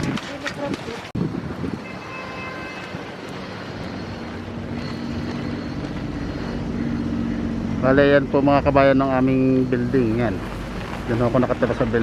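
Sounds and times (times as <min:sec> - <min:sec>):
outdoor noise: 0:00.0 - 0:12.0
vehicle engine hum: 0:00.0 - 0:12.0.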